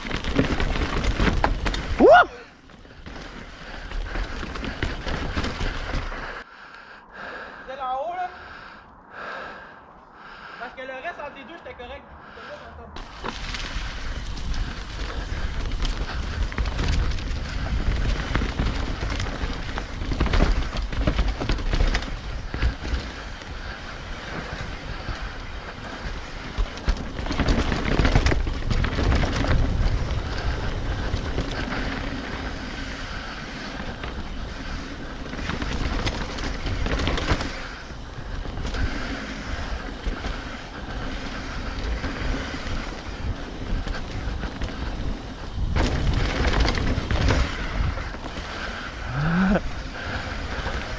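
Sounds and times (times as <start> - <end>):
tyres rolling over dirt: 0.0 - 6.4, 13.0 - 50.9
bike rattling over bumps: 0.0 - 6.5, 13.0 - 50.9
wind buffeting microphone: 13.0 - 50.9.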